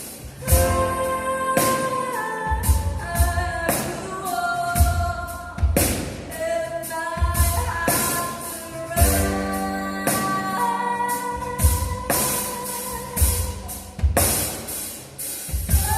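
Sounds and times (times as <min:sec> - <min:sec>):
drum kit with cymbal strikes: 0:00.0 - 0:15.9
person singing: 0:00.4 - 0:05.7, 0:06.3 - 0:14.1
held keyboard chords: 0:09.0 - 0:13.9.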